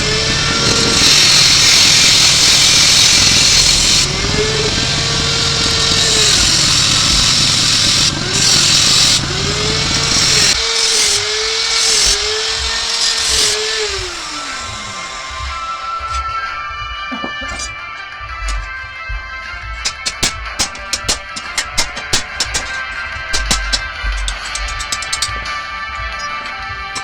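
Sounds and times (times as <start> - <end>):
steady hiss: 0.0 - 16.1
motorcycle engine revving: 0.0 - 16.5.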